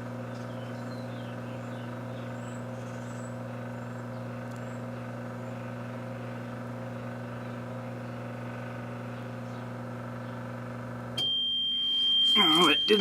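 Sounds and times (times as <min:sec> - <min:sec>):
microwave oven humming: 0:00.0 - 0:13.0
long high beep: 0:11.2 - 0:13.0.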